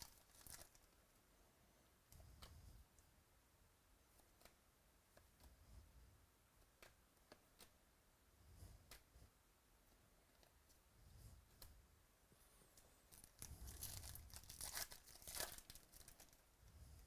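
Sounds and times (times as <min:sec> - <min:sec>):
card pack wrapper tearing: 0:00.0 - 0:00.8, 0:13.1 - 0:16.4.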